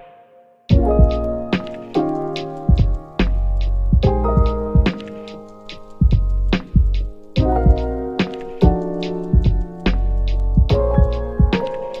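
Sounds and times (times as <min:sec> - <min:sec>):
held chords: 0:00.0 - 0:12.0
bass drum beat: 0:00.7 - 0:01.4, 0:02.6 - 0:05.0, 0:06.0 - 0:11.7.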